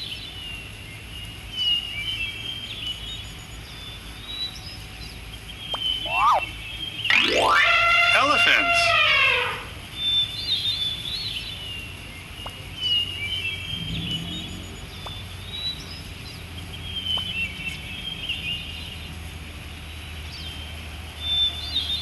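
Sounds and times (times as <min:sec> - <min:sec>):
birds chirping: 0:00.0 - 0:09.0, 0:10.2 - 0:19.2.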